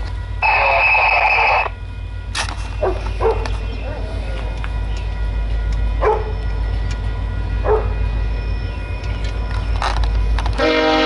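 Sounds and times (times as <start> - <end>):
steady low rumble: 0.0 - 11.0
train horn: 10.5 - 11.0.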